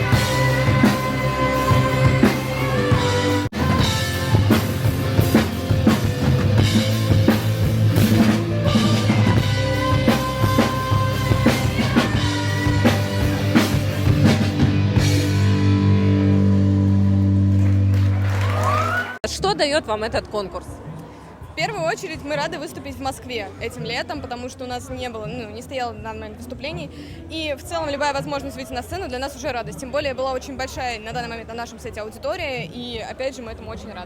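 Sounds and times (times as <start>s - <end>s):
rock music: 0.0s - 19.2s.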